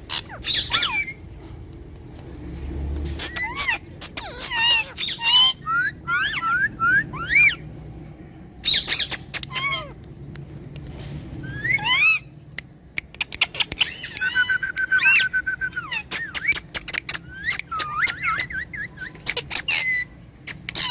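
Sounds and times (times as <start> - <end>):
parrots squawking and chirping: 0.0 - 1.3, 3.0 - 7.6, 8.6 - 10.1, 11.3 - 12.3, 13.1 - 20.9.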